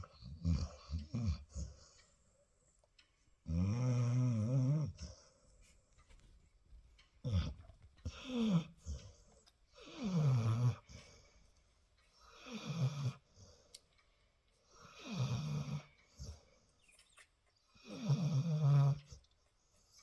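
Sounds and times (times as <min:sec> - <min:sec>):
dog snoring: 0:00.0 - 0:02.0, 0:03.4 - 0:05.3, 0:07.2 - 0:11.2, 0:12.2 - 0:13.4, 0:14.8 - 0:16.4, 0:17.8 - 0:19.2.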